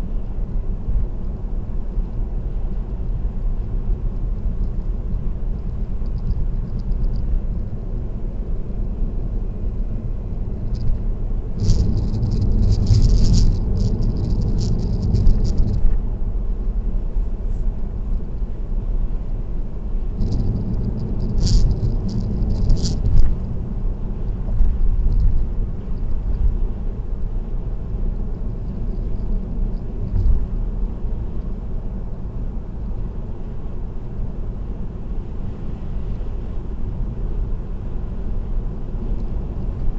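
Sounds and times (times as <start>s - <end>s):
car road and tyre rumble: 0.0s - 39.9s
crisp rattling: 11.6s - 15.8s, 20.2s - 23.2s.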